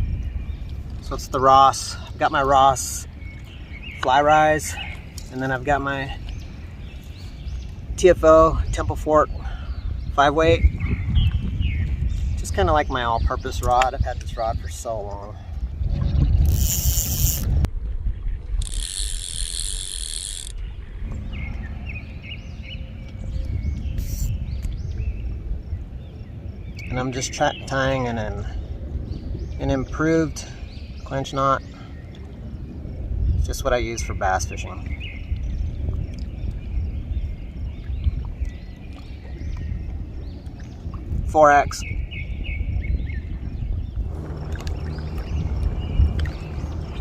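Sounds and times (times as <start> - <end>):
birds chirping: 0.0 - 17.4, 18.0 - 47.0
wind rumble on microphone: 0.0 - 47.0
fishing reel drag buzzing: 16.4 - 17.6, 18.6 - 20.6, 24.0 - 24.3.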